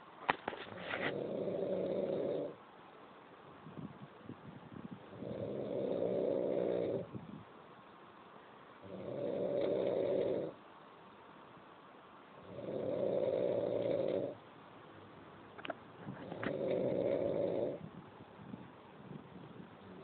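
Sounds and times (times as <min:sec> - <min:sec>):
person snoring: 0:01.1 - 0:02.6, 0:05.2 - 0:07.1, 0:08.8 - 0:10.6, 0:12.4 - 0:14.4, 0:16.3 - 0:17.8.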